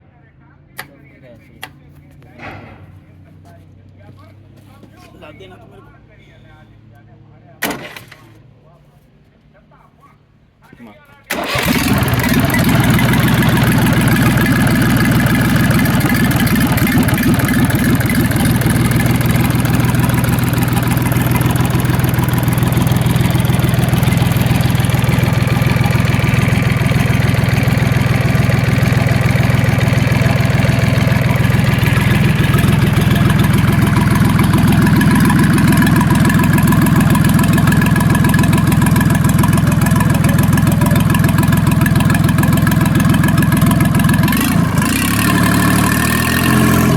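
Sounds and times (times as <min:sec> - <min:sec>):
diesel engine running: 0:11.3 - 0:46.9.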